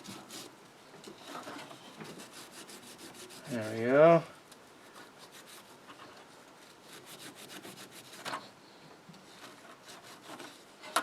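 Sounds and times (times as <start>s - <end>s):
scrubbing pad scratching: 2.2s - 3.8s.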